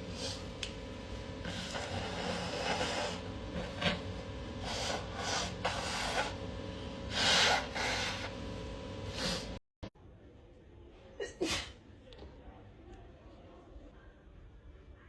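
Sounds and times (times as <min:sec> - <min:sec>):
person sneezing: 0:11.2 - 0:11.8.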